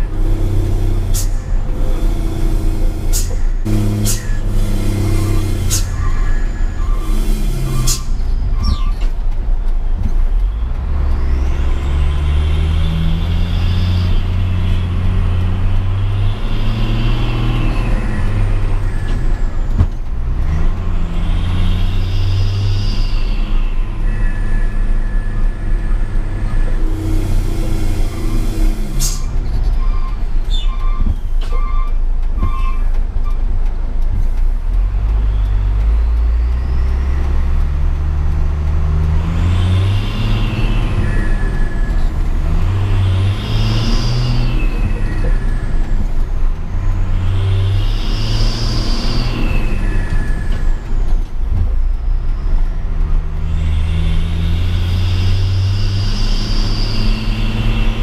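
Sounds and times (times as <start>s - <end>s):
diesel truck engine revving: 0.0s - 58.0s
high engine whistle: 1.1s - 8.9s, 21.0s - 32.9s, 39.3s - 46.2s, 46.9s - 51.0s, 53.5s - 58.0s
air brake hiss: 3.1s - 4.4s.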